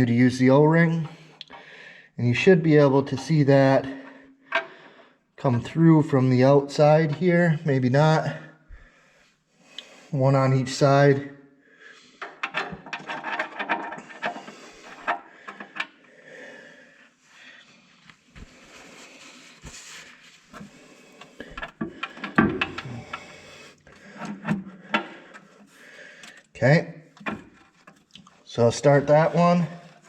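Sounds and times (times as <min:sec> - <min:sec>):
metal parts clicking and tapping: 0:12.2 - 0:16.0, 0:21.4 - 0:23.3.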